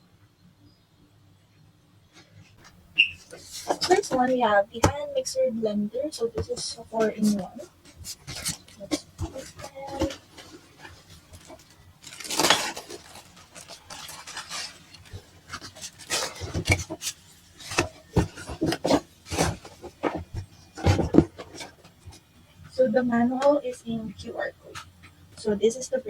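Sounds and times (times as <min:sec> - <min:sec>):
cardboard scraping and rubbing: 0:03.0 - 0:04.6, 0:06.3 - 0:22.3.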